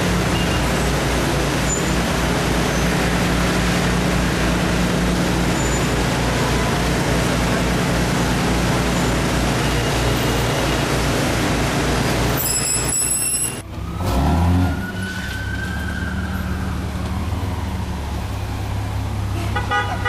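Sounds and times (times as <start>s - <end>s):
vehicle engine revving past: 13.8s - 15.1s.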